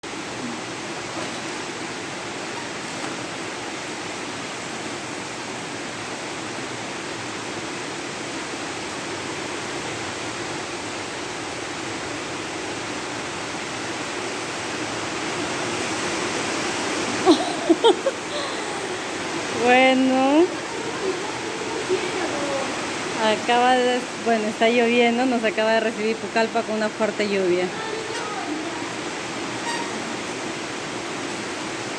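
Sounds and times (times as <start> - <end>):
heavy rain pouring: 0.0 - 31.9.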